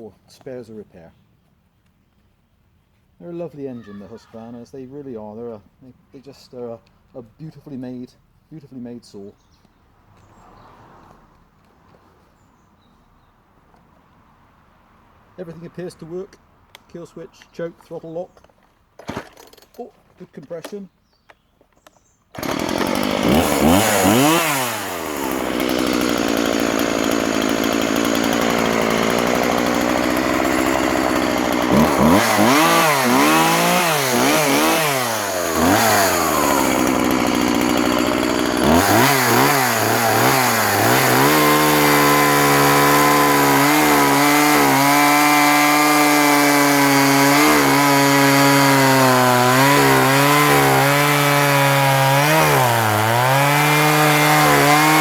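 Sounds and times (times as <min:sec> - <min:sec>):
chainsaw engine revving: 0:22.4 - 0:55.0.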